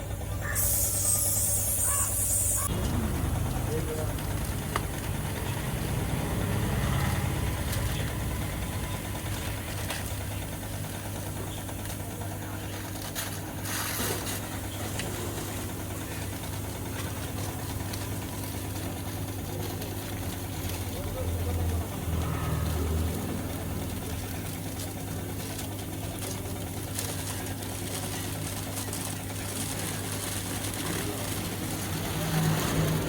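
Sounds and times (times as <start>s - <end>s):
tractor diesel engine idling: 0.0s - 33.0s.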